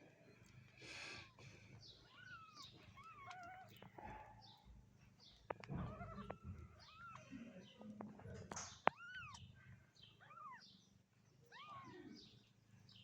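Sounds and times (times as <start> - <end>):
cats meowing: 1.2 - 4.4, 5.4 - 12.5.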